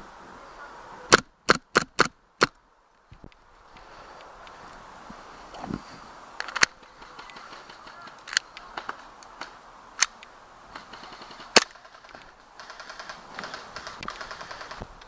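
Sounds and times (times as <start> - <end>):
faint clicks: 6.4 - 15.0.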